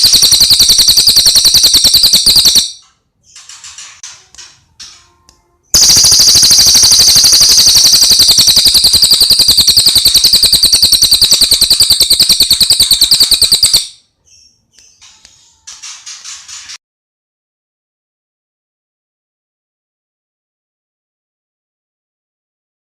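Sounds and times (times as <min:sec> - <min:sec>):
bird high trill: 0:00.0 - 0:02.8, 0:05.8 - 0:14.0.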